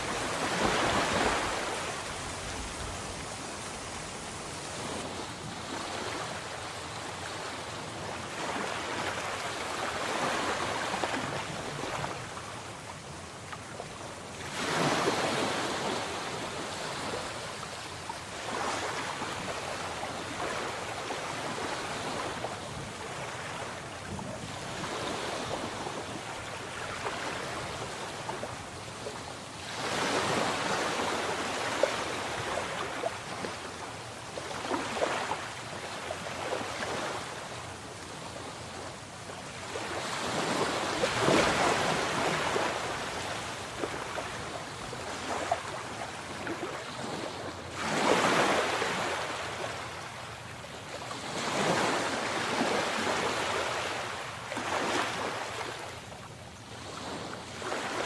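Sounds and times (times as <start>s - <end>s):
sea waves breaking: 0.0s - 58.0s.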